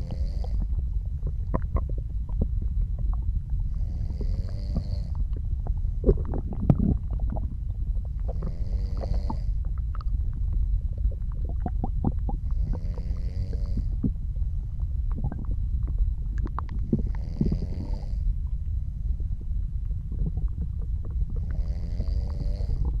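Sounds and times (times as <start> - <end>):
soft snoring: 0.0 - 0.8, 3.8 - 5.2, 8.2 - 9.6, 12.5 - 14.1, 16.8 - 18.3, 21.4 - 23.0
stomach gurgling: 0.0 - 23.0.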